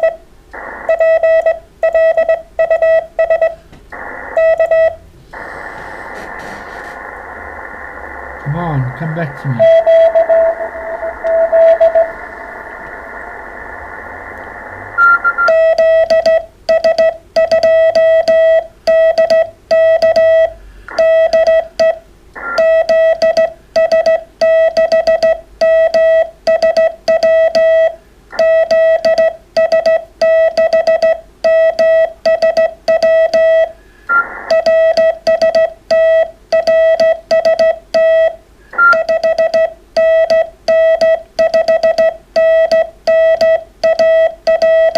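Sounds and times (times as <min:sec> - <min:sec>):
faint morse code signal: 0:00.0 - 0:03.6, 0:04.3 - 0:05.0, 0:08.4 - 0:13.1, 0:14.4 - 0:44.9
fast morse code tone: 0:00.8 - 0:03.6, 0:04.4 - 0:05.0, 0:08.4 - 0:12.2, 0:15.0 - 0:44.9
radio receiver hiss: 0:03.6 - 0:15.5, 0:33.7 - 0:35.0.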